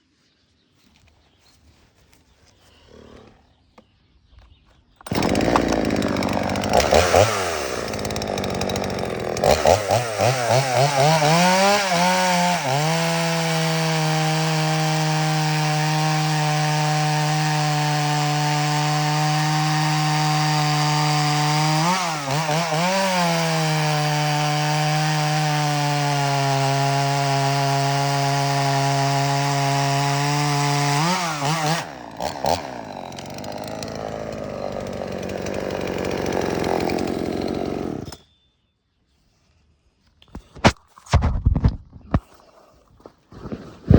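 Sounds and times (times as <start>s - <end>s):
chainsaw cutting wood: 5.0s - 38.3s, 43.3s - 43.9s.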